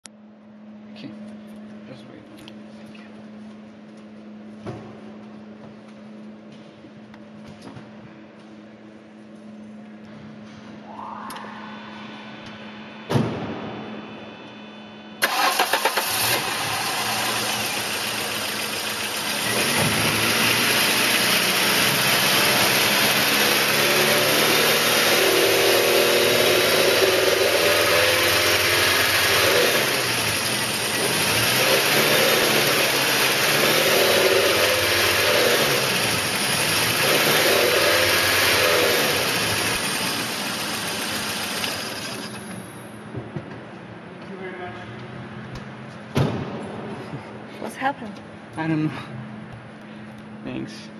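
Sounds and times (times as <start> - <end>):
thump: 12.5 - 14.0, 46.1 - 47.2
car engine revving: 15.2 - 42.0
car engine cranking and starting: 15.2 - 43.0
engine rattle: 15.2 - 43.0.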